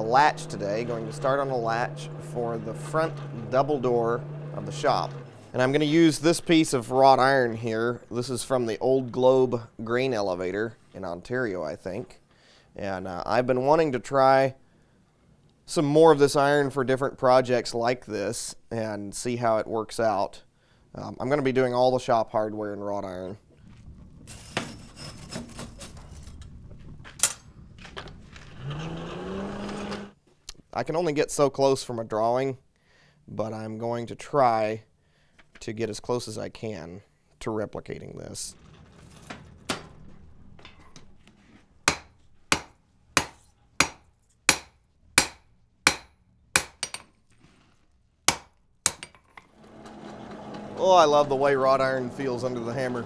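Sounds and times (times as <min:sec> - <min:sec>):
hammer ringing on anvil: 0:41.9 - 0:47.1.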